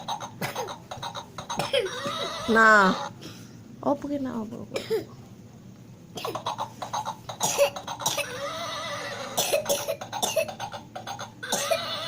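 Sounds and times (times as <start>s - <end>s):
small child coughing: 0.0s - 2.2s, 4.7s - 5.2s, 6.2s - 8.5s, 9.2s - 12.0s.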